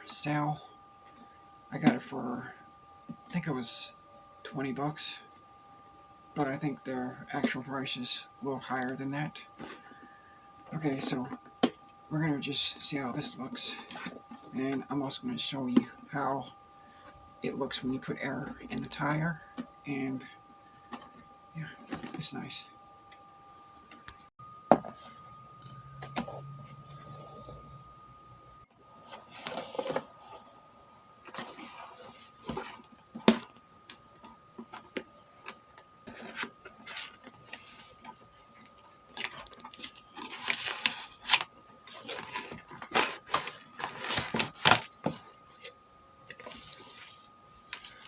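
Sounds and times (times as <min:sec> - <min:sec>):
box rustling: 0:36.1 - 0:45.7.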